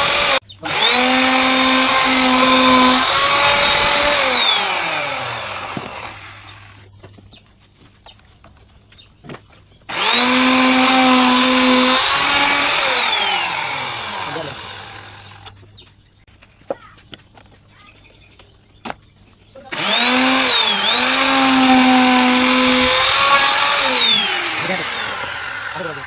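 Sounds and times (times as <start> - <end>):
electric power saw cutting wood: 0.0 - 6.8, 9.9 - 15.6, 19.7 - 26.0.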